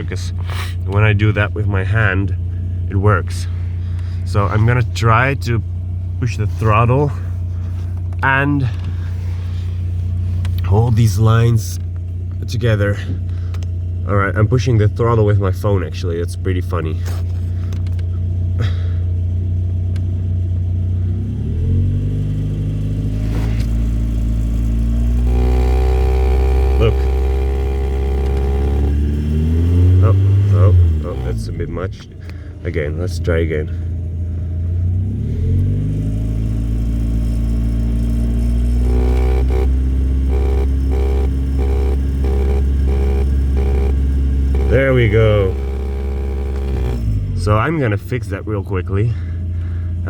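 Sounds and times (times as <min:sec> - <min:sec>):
car engine idling and revving: 0:00.0 - 0:50.0
car engine revving: 0:21.0 - 0:31.9, 0:34.0 - 0:47.7
buzzing rattle: 0:23.8 - 0:31.4, 0:37.0 - 0:47.4.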